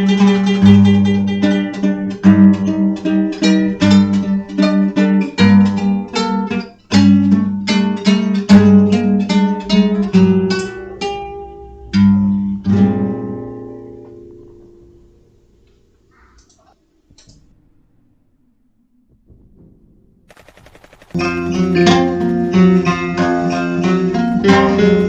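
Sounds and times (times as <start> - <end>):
acoustic guitar folk playing: 0.0 - 16.0, 21.2 - 25.0.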